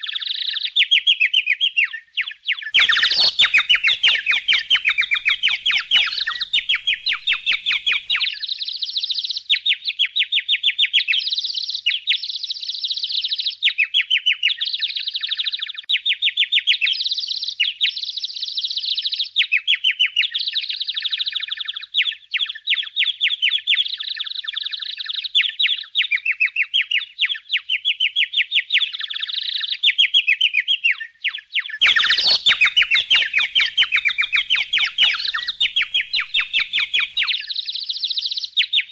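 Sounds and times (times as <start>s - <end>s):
budgerigars chattering: 1.8s - 8.6s, 31.3s - 37.7s.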